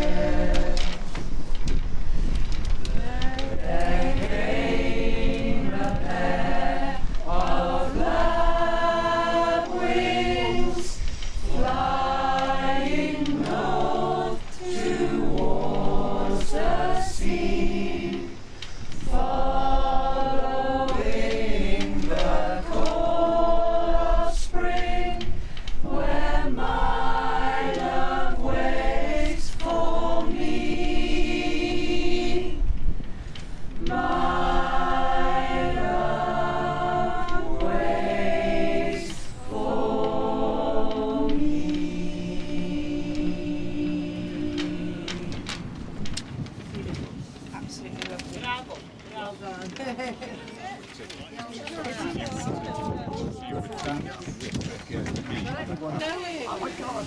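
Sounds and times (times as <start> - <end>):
choir singing in harmony: 0.0 - 1.8, 2.9 - 46.2
steady low rumble: 0.0 - 16.7, 17.3 - 47.4.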